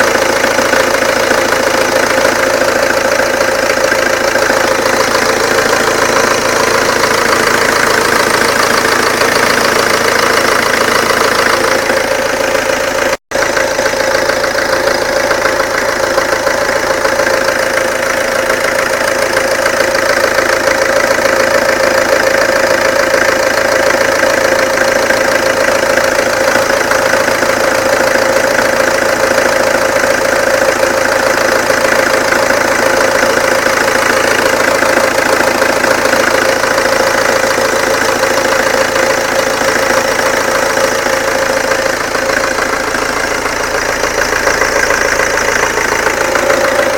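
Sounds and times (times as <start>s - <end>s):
diesel engine idling: 0.0s - 46.9s.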